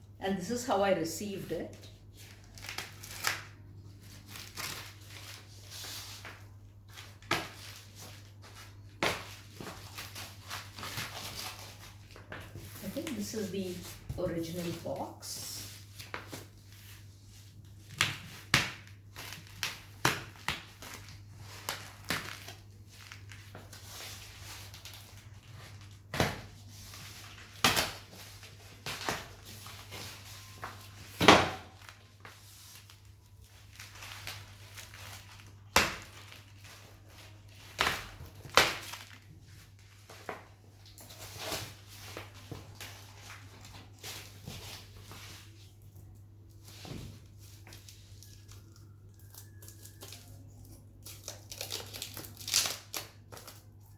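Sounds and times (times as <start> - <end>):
packaging crinkling: 47.9 - 53.8.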